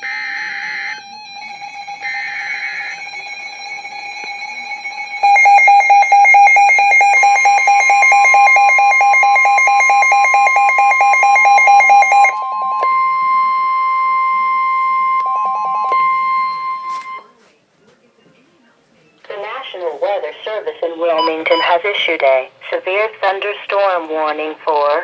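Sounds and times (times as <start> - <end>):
rapidly pulsing alarm beep: 0.0 - 17.3, 21.2 - 21.8
steady long warning tone: 0.0 - 17.3.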